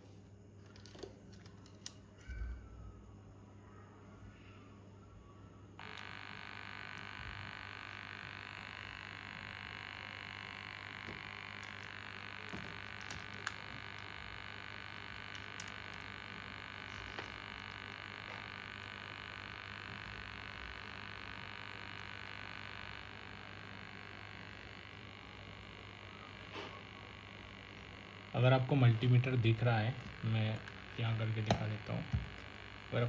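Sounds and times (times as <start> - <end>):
low electrical hum and hiss: 0.0 - 33.0
multimeter probes clicking: 0.6 - 2.0, 10.9 - 18.6, 30.0 - 32.9.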